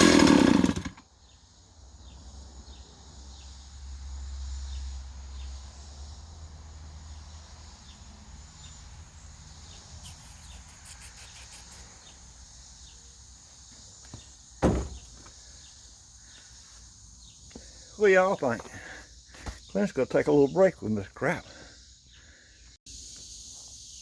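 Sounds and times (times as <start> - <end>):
crickets chirping: 0.2 - 24.0
loud thump: 14.6 - 15.2.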